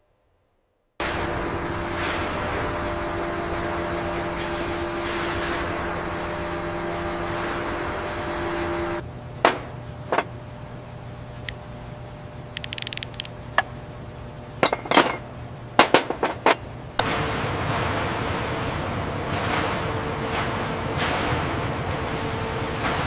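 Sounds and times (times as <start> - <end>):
industrial drone: 1.0 - 14.8, 17.0 - 23.0
low machine hum: 5.6 - 23.0
metallic clicks and clinks: 12.6 - 13.3
rattle of ticks: 12.6 - 13.4.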